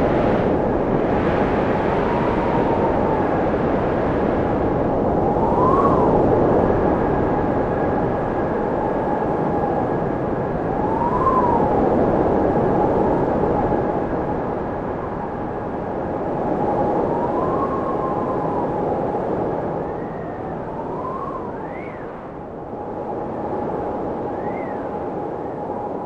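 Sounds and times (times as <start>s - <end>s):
howling blizzard wind: 0.0s - 26.0s
thin whistling tone: 19.8s - 22.2s, 24.3s - 26.0s.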